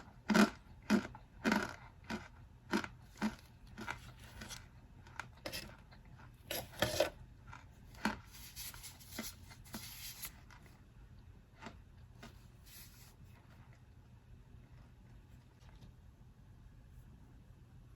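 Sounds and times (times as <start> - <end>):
starch powder crunching: 0.0 - 10.7.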